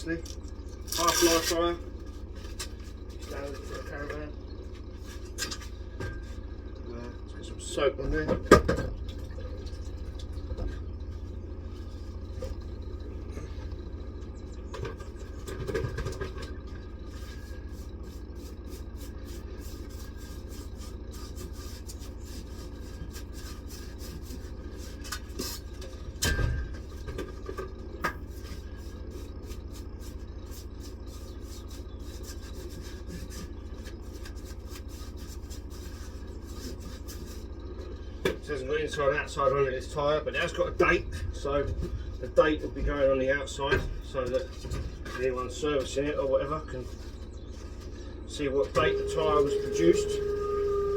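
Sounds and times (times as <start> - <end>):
steady low hum: 0.0 - 50.9
brush rubbing on tyre: 17.1 - 25.8, 28.2 - 38.0.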